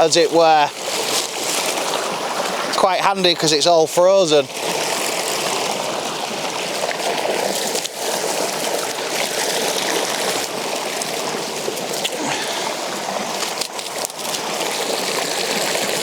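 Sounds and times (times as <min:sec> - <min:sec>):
river water flowing: 0:00.0 - 0:16.0.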